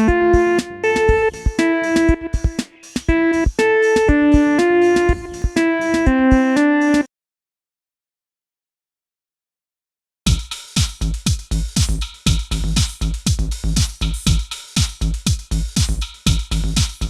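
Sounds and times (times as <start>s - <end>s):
melody of held notes: 0.0s - 7.0s
percussive beats: 0.0s - 7.0s, 10.3s - 17.0s.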